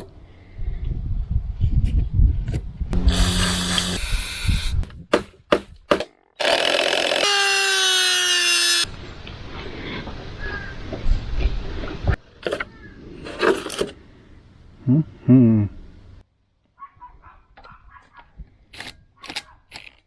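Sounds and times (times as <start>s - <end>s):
power tool running: 3.0s - 4.9s.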